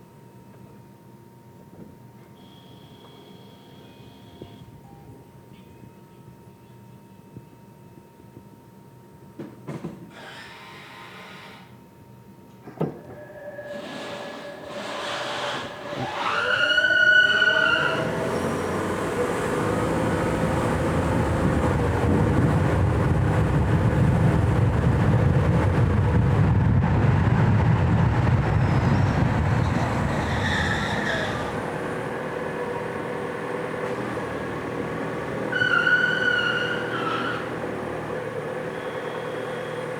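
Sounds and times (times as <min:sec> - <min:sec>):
brief high squeal: 0:02.4 - 0:04.6, 0:13.1 - 0:18.5, 0:30.2 - 0:31.6, 0:35.5 - 0:37.5
car engine and tyre rumble: 0:17.2 - 0:39.9.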